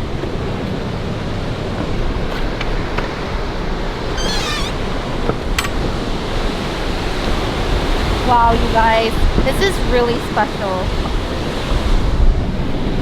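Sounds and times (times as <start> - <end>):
brief high squeal: 4.2 - 4.9
surf breaking on a beach: 4.8 - 13.0.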